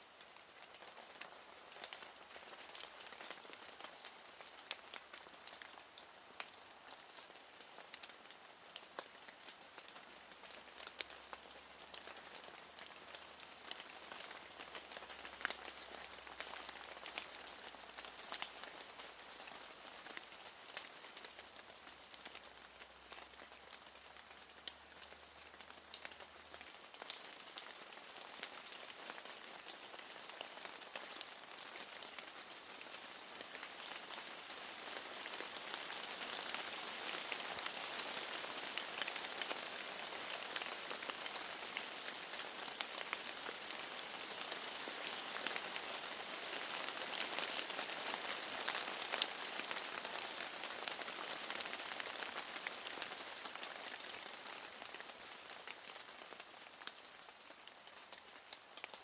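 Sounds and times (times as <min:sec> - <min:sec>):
faint steady rain: 0:00.0 - 0:59.0.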